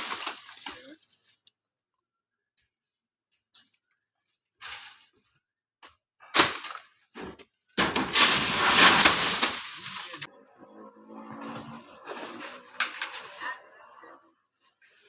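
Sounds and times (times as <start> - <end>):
tree parts crashing down: 0.0 - 1.0, 6.2 - 10.3, 11.4 - 13.4
tree parts cracking: 0.0 - 1.5, 6.2 - 7.0, 7.8 - 10.3, 12.0 - 13.4.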